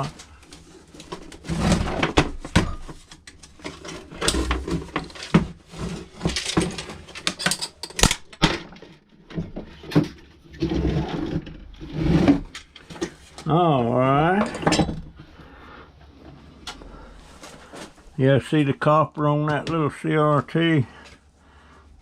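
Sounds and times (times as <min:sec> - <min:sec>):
plastic parts knocking and scraping: 0:00.0 - 0:13.6, 0:19.4 - 0:21.2.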